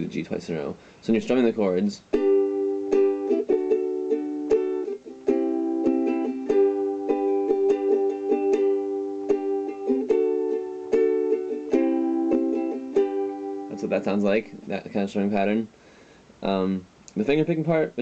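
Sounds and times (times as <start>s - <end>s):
ukulele strumming chords: 1.2s - 15.6s.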